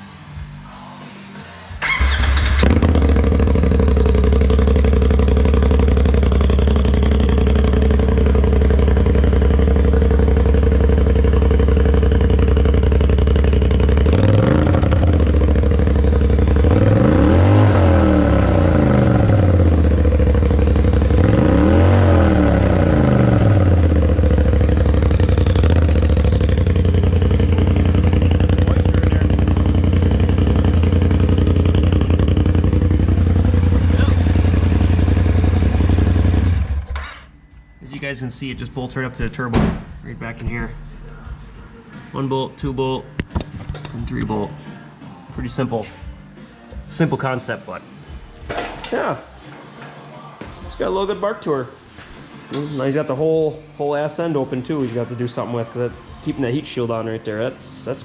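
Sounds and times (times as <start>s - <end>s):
engine cranking: 1.8s - 4.1s
exhaust barking: 1.8s - 36.9s
engine idling and revving: 1.8s - 37.3s.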